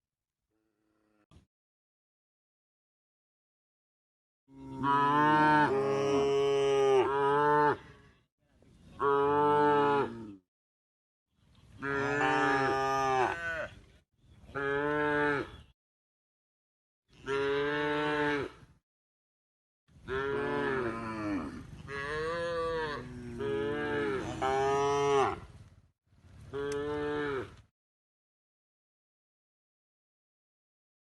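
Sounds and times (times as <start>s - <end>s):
cow mooing: 4.5s - 7.9s, 11.8s - 13.7s, 14.6s - 15.6s, 17.2s - 18.6s, 20.1s - 25.5s, 26.6s - 27.6s.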